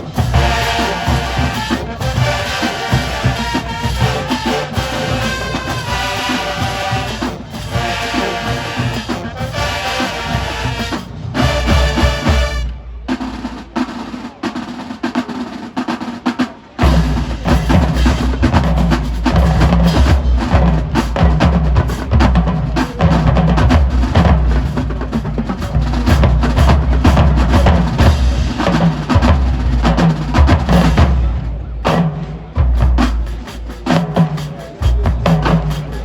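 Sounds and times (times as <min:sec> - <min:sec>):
snare drum rhythm: 0:00.0 - 0:36.0
bass drums: 0:16.8 - 0:36.0.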